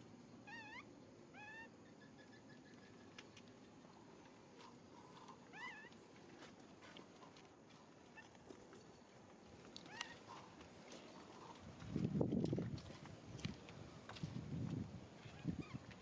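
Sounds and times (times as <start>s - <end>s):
background hiss: 0.0s - 16.0s
monkey squeaky calls: 0.4s - 2.8s, 5.5s - 5.9s, 15.3s - 15.9s.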